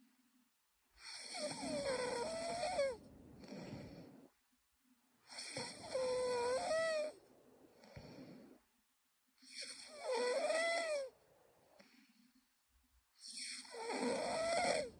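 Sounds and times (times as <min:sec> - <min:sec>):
woman snoring: 0:01.0 - 0:04.3, 0:05.3 - 0:08.6, 0:09.4 - 0:11.1, 0:13.2 - 0:14.9.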